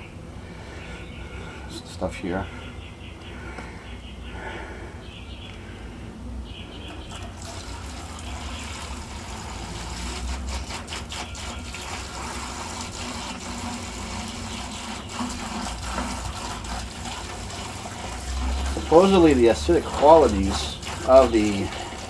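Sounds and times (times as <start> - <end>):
vinegar pouring into bucket: 7.1 - 22.0.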